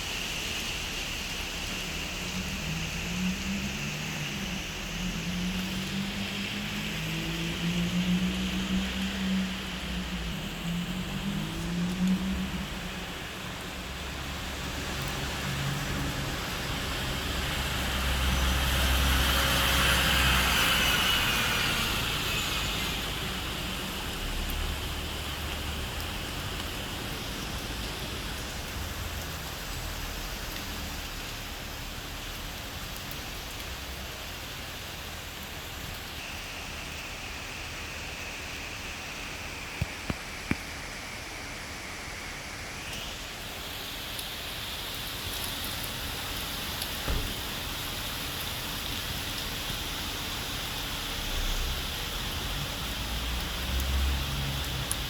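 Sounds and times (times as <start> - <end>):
steady rain falling: 0.0 - 55.0
vehicle passing on wet road: 0.0 - 55.0.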